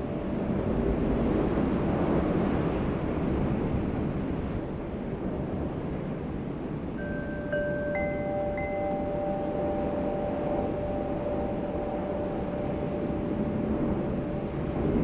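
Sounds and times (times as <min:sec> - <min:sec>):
wind chimes ringing: 0:07.0 - 0:15.0.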